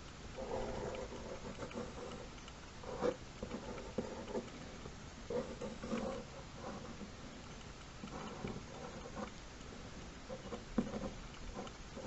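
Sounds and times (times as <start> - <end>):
pencil scratching on paper: 0.4 - 4.5, 5.3 - 7.1, 8.0 - 9.4, 10.3 - 12.0.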